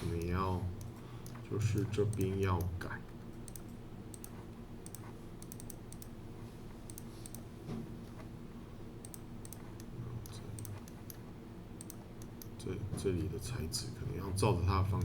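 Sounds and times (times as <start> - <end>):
faint low hum: 0.0 - 15.0
computer mouse clicking: 0.2 - 2.8, 3.4 - 6.2, 6.8 - 7.5, 9.0 - 11.2, 11.8 - 12.6.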